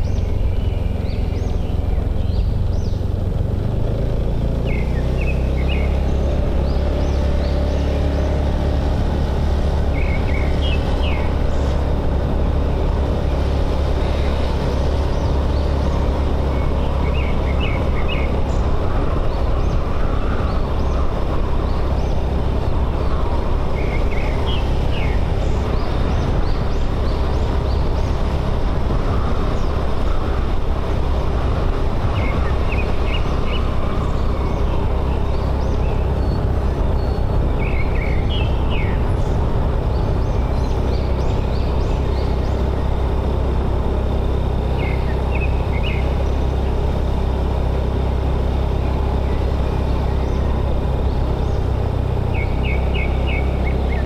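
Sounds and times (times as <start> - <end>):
motorbike engine running: 0.0 - 54.0
wind and road noise: 0.0 - 54.0.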